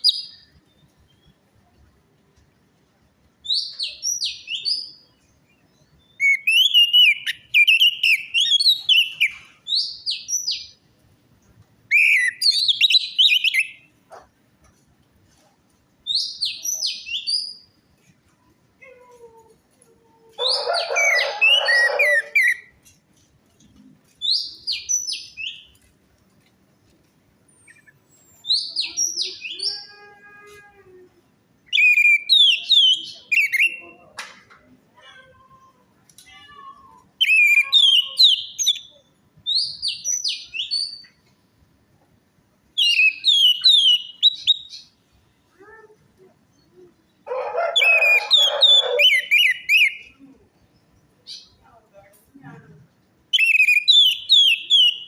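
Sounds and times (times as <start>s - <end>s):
bird singing whistled phrases: 6.0s - 10.7s, 11.9s - 13.8s, 31.7s - 33.9s, 37.2s - 41.1s, 42.8s - 44.9s, 47.8s - 50.2s, 53.4s - 55.0s.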